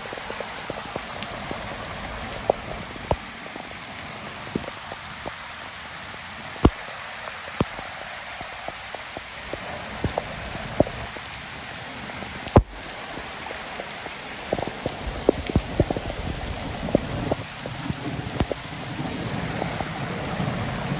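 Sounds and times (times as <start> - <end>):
rain falling: 0.0 - 20.9.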